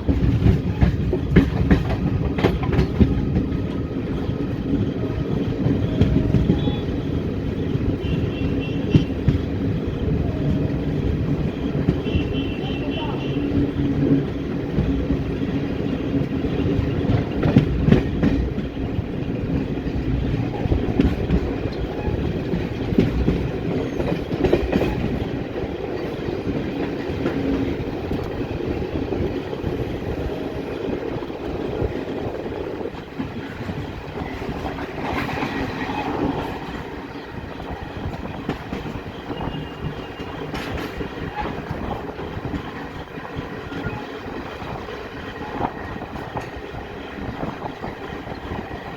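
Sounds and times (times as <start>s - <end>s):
clatter over rail joints: 0.0s - 4.6s, 32.2s - 48.8s
train wheels rumbling on track: 0.0s - 48.9s.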